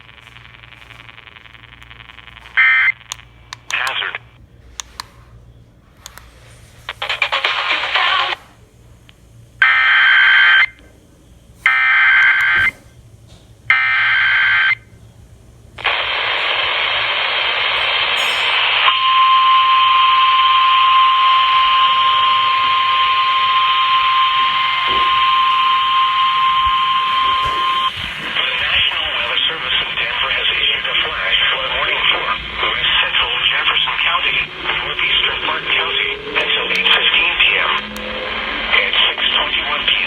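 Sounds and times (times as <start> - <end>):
steady warning alarm tone: 0.0 - 4.4, 9.6 - 10.8, 11.6 - 12.9, 13.7 - 15.0, 15.8 - 40.0
radio hiss: 0.0 - 5.0, 6.4 - 9.2, 15.7 - 40.0
data tone bursts: 17.5 - 40.0.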